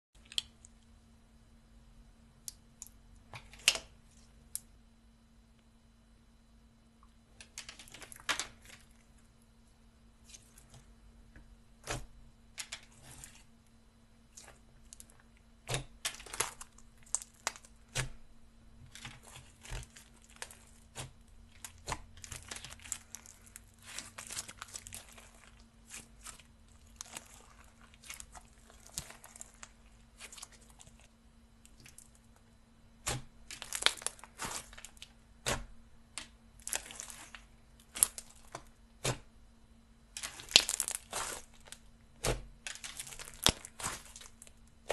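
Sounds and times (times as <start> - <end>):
faint low hum: 0.2 - 44.9
slime crackling and popping: 14.3 - 18.2, 18.9 - 32.3, 33.0 - 39.2, 40.1 - 44.9.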